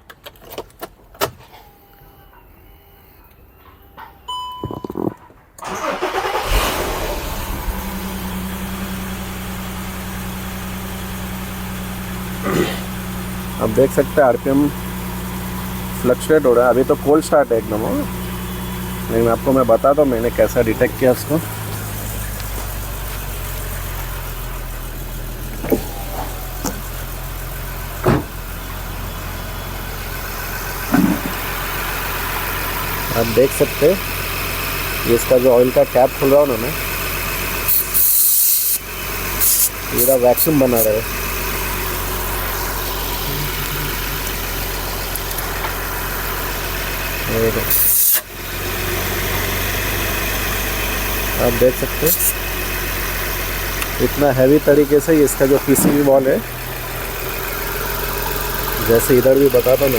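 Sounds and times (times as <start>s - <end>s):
car engine starting and idling: 0.0s - 59.9s
short beep tones: 3.8s - 5.2s.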